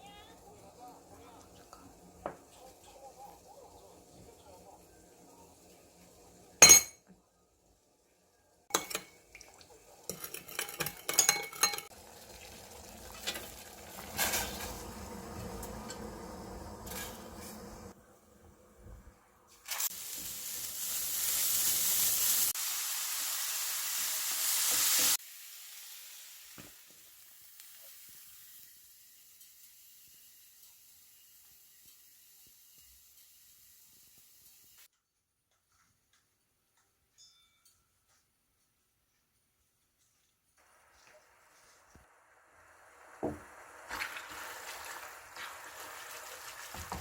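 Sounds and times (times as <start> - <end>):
utensils and pan clattering: 6.6 - 7.0, 8.7 - 9.3, 10.0 - 11.9, 13.0 - 14.9, 16.8 - 17.6
food sizzling in frying pan: 8.7 - 18.0, 19.5 - 34.9, 40.6 - 47.0
faint hiss: 18.9 - 34.9.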